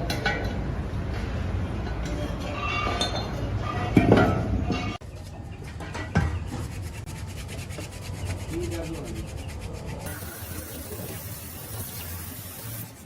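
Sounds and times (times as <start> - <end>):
rapid abrasive scraping: 6.4 - 13.0.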